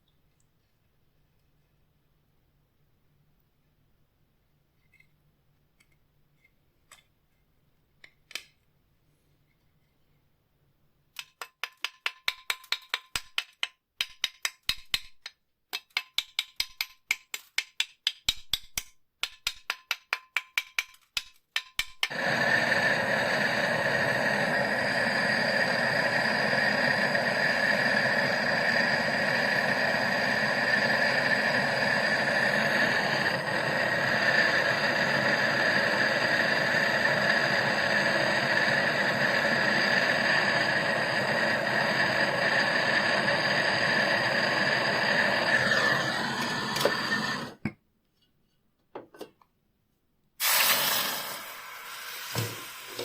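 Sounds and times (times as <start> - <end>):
power tool whining: 22.1 - 47.6.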